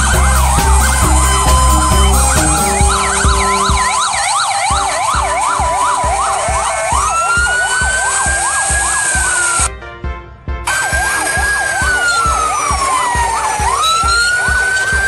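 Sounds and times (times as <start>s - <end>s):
ambulance sirens yelping: 0.0s - 9.7s, 10.7s - 15.0s
siren wailing: 0.0s - 9.7s, 10.7s - 15.0s.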